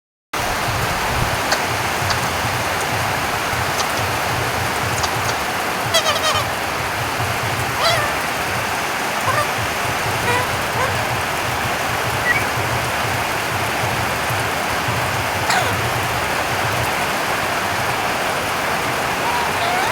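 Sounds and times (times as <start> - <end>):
steady rain falling: 0.4 - 19.9
bird calling and chirping: 1.3 - 8.6, 9.2 - 13.1, 15.4 - 16.2, 19.1 - 19.9.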